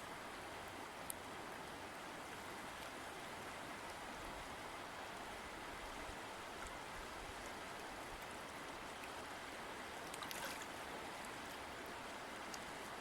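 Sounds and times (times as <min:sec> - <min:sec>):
river water flowing: 0:00.0 - 0:13.0
small water splashes: 0:06.5 - 0:13.0.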